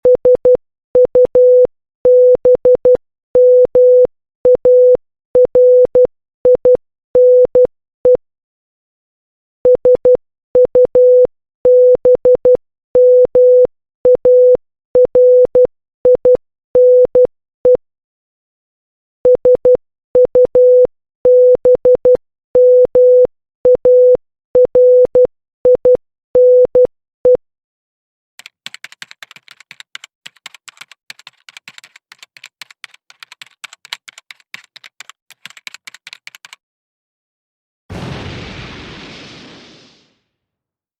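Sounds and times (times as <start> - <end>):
morse code beeps: 0.0 - 8.2.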